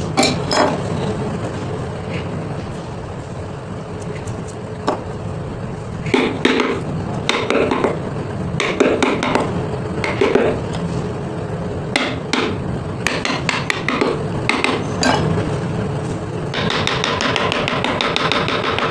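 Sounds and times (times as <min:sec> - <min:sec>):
low hum: 0:00.0 - 0:16.8
hammer tapping on chisel: 0:06.1 - 0:08.0, 0:08.6 - 0:10.6, 0:12.0 - 0:15.3, 0:16.5 - 0:18.9.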